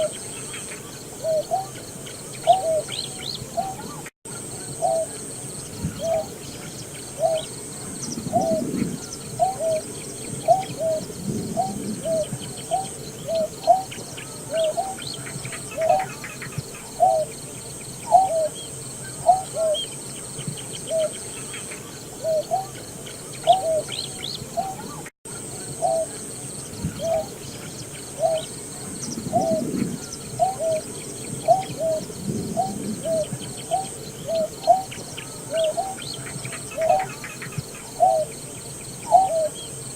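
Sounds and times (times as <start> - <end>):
bird hooting calls: 0.0 - 17.4, 18.0 - 20.0, 20.8 - 38.4, 39.0 - 39.7.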